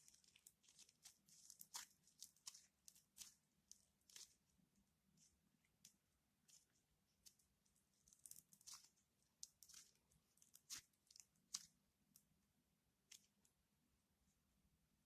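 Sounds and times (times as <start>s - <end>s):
slime squishing with sticky pops: 0.0s - 12.3s.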